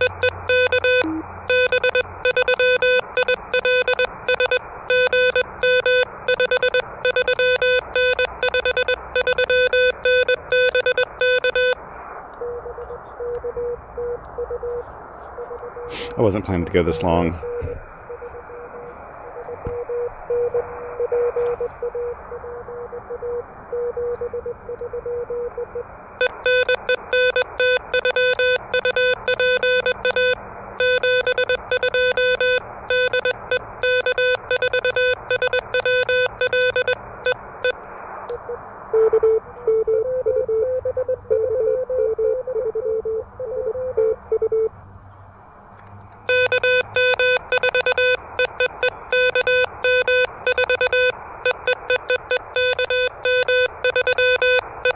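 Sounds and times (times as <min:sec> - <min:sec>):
buzzy morse sidetone bursts: 0:00.0 - 0:11.8, 0:26.2 - 0:37.8, 0:46.3 - 0:54.9
morse code tone: 0:00.0 - 0:11.8, 0:15.4 - 0:44.7, 0:46.3 - 0:54.9
receiver hiss: 0:15.2 - 0:22.4.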